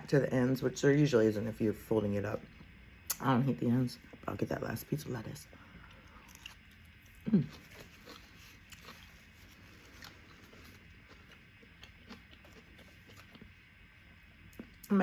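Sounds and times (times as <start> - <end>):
faint chewing: 5.8 - 13.7.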